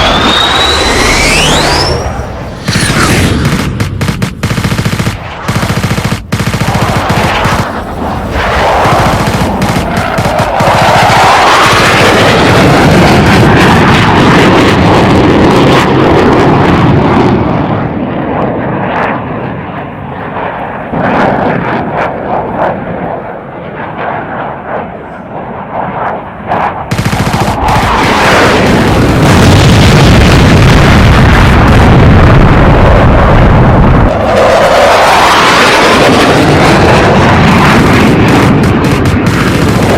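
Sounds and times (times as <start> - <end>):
aircraft engine noise: 0.0 - 39.9
machine-gun fire: 2.5 - 12.6, 26.9 - 31.5, 36.7 - 39.9.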